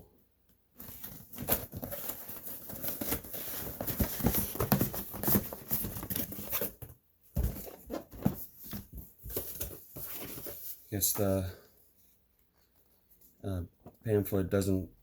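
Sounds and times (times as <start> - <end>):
cardboard packaging rustling: 0.8 - 10.9.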